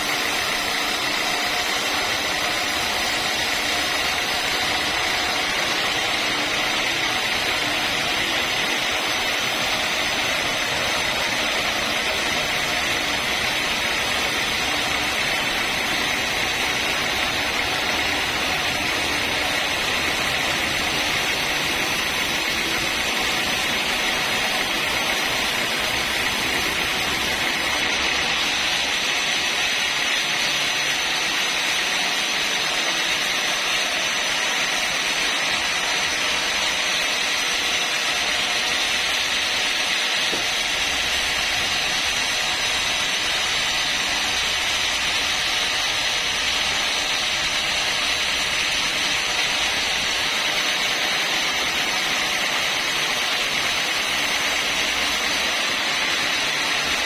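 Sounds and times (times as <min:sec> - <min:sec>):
saw cutting through log: 0:00.0 - 0:57.0.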